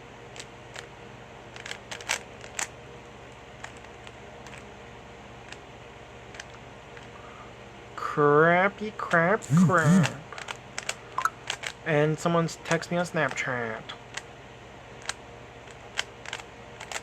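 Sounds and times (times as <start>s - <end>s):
puzzle cube plastic clicks: 1.5s - 2.7s, 6.3s - 7.1s, 9.4s - 11.8s, 15.0s - 17.0s
steady low hum: 9.4s - 10.4s.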